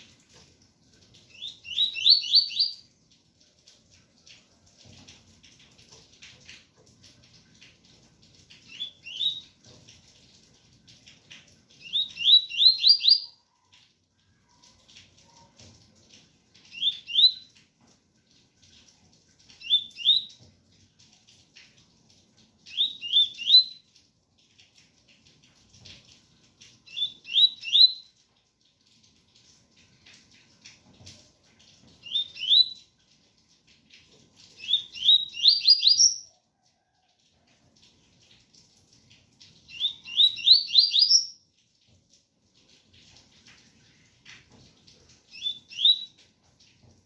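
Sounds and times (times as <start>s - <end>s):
faint rain hiss: 0.0s - 47.0s
bird singing whistled notes: 1.4s - 2.8s, 8.7s - 9.4s, 11.8s - 13.3s, 16.8s - 17.5s, 22.7s - 23.8s, 26.9s - 28.1s, 32.0s - 32.8s, 34.6s - 36.3s, 39.7s - 41.4s, 45.4s - 46.1s.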